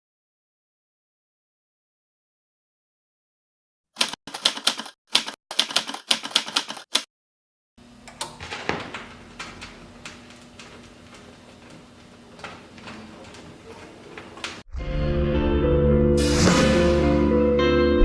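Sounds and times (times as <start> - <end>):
rapid sharp mechanical clicks: 4.0 - 7.1.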